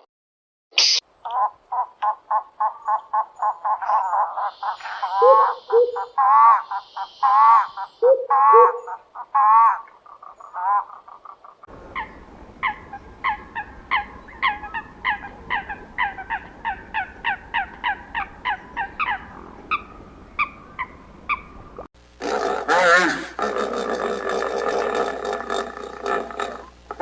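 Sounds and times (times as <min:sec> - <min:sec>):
animal honking calls: 0:03.8 - 0:09.9, 0:22.2 - 0:27.0
low steady hum: 0:11.7 - 0:27.0.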